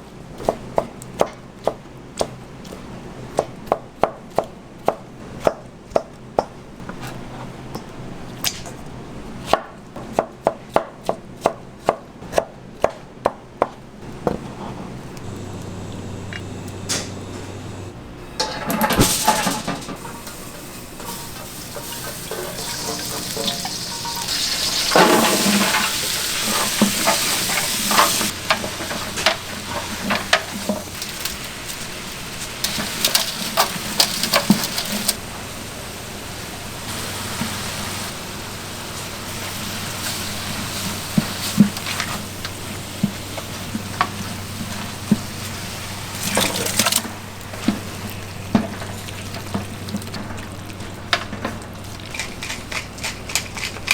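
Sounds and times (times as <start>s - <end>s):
steady hiss: 18.9s - 48.5s
utensils and containers knocking: 21.0s - 30.9s.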